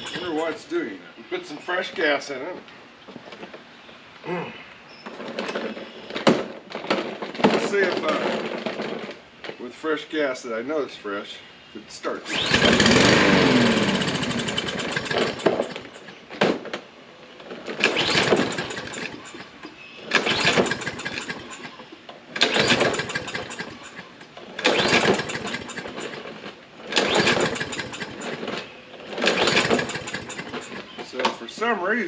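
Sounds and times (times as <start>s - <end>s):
lawn mower engine pull-starting: 0.0s - 0.8s, 12.1s - 16.8s, 17.4s - 31.8s.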